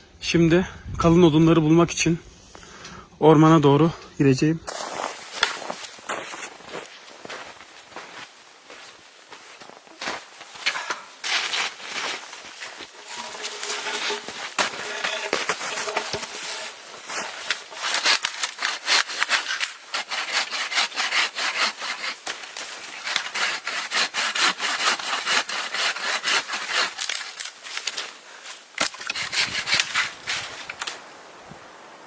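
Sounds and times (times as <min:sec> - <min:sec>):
hand saw cutting wood: 0:11.2 - 0:28.0, 0:28.8 - 0:31.0.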